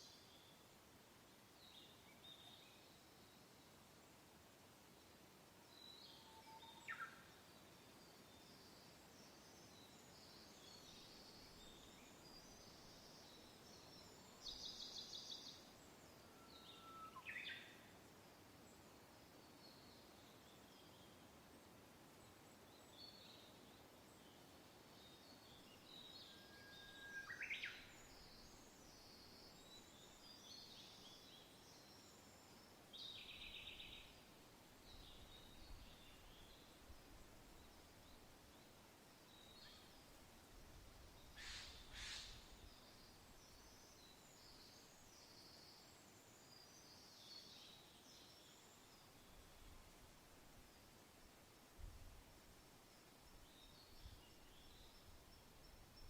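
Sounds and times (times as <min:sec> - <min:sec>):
wind hissing: 0:40.8 - 0:42.7
birds chirping: 0:41.2 - 0:43.6.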